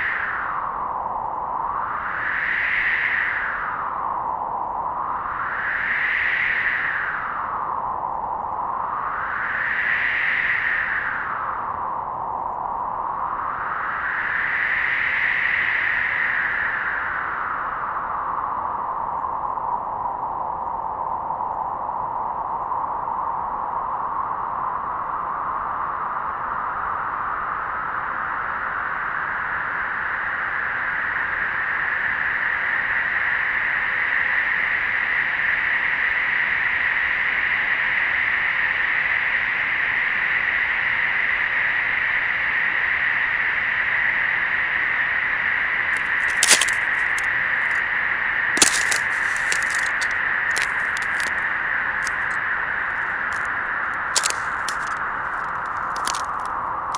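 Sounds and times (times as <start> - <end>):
sharp cracks: 46.0 - 47.8, 48.6 - 51.4, 52.0 - 52.4, 54.2 - 56.5.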